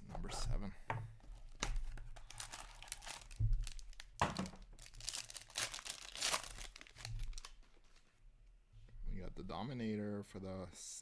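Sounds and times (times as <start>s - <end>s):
plastic wrapping crinkling and tearing: 1.3s - 8.1s.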